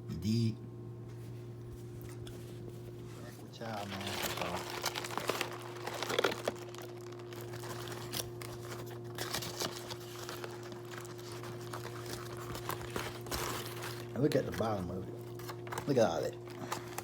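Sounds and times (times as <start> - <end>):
steady low hum: 0.0 - 17.0
paper wrapper crinkling: 3.6 - 17.0.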